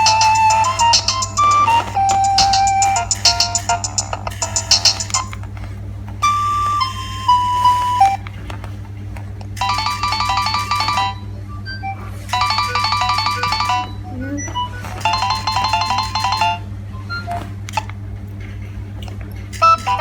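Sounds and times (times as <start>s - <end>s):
mobile phone ringtone melody: 0.0s - 5.4s, 6.2s - 8.2s, 9.6s - 17.4s.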